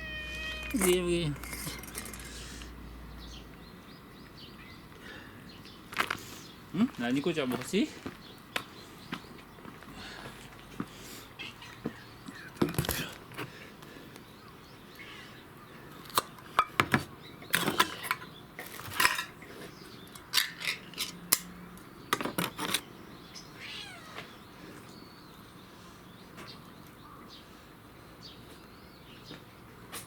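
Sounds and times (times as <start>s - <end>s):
cat meowing: 0.0s - 1.0s, 23.6s - 24.4s.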